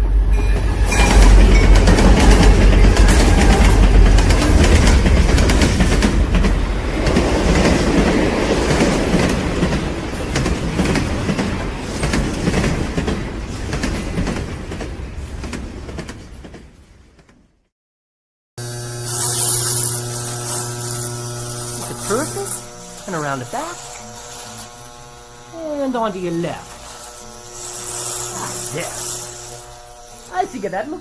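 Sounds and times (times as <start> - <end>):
train rumbling past: 0.0 - 17.3
wheels clicking over rail joints: 1.0 - 17.4.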